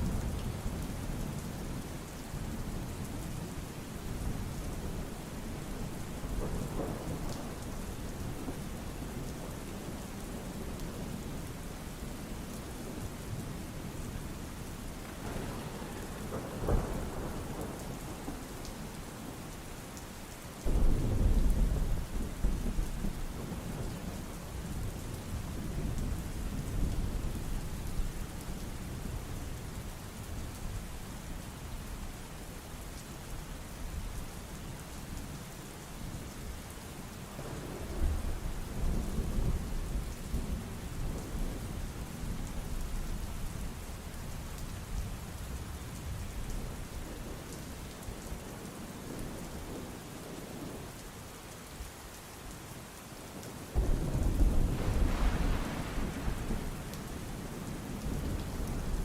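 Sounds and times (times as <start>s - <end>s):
steady rain: 0.0s - 59.0s
rolling thunder: 15.0s - 19.0s, 53.8s - 59.0s.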